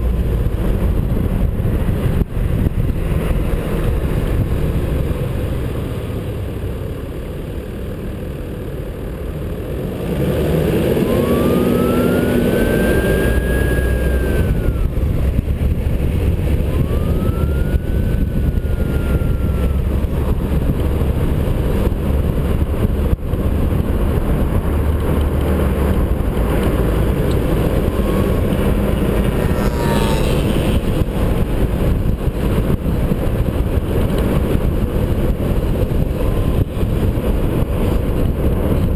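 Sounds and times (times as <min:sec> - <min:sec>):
wind noise: 0:00.0 - 0:06.8, 0:09.8 - 0:38.9
vehicle engine and tyre noise: 0:00.0 - 0:38.9
rising and falling whine: 0:02.8 - 0:32.8.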